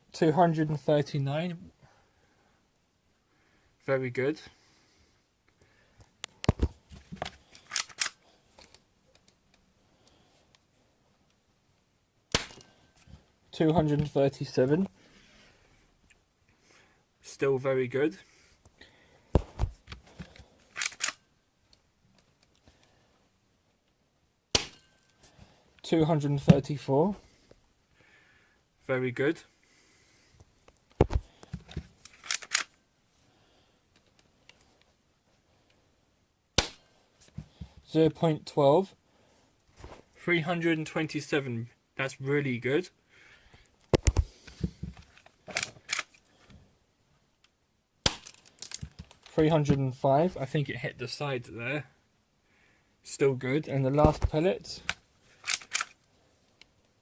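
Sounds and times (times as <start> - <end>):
pistol mechanical clicks: 7.6 - 8.2, 20.7 - 21.2, 32.0 - 32.7, 45.5 - 46.2, 54.9 - 56.0
pistol slide rasping: 7.6 - 8.2, 20.7 - 21.2, 32.0 - 32.7, 55.4 - 56.0
airsoft pistol shot: 12.3 - 12.6, 24.5 - 24.8, 36.6 - 36.8.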